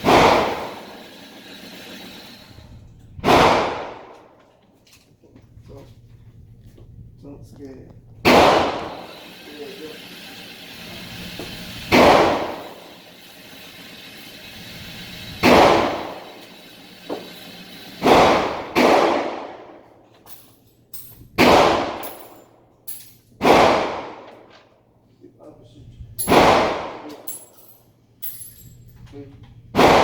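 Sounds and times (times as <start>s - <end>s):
rifle shots echoing: 0.0s - 0.8s, 3.2s - 4.1s, 8.3s - 9.0s, 11.9s - 12.6s, 21.4s - 22.2s, 23.4s - 24.3s, 26.2s - 27.3s, 29.8s - 30.0s.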